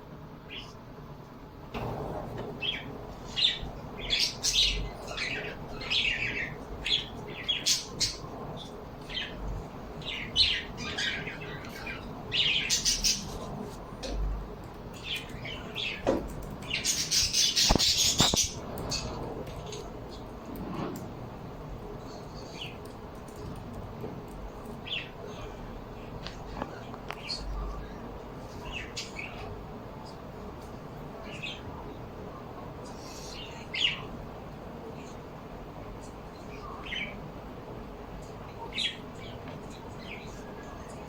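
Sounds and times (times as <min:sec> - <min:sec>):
birds chirping and squawking: 0:01.8 - 0:20.9, 0:22.0 - 0:23.6, 0:24.7 - 0:30.2, 0:38.2 - 0:40.8.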